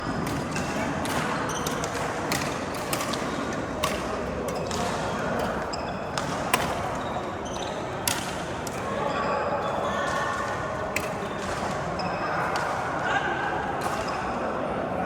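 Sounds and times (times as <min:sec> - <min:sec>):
racket striking shuttlecock: 0:00.2 - 0:07.1, 0:07.9 - 0:08.9, 0:10.1 - 0:12.8
shoe squeaks on floor: 0:05.7 - 0:06.2, 0:07.0 - 0:08.0.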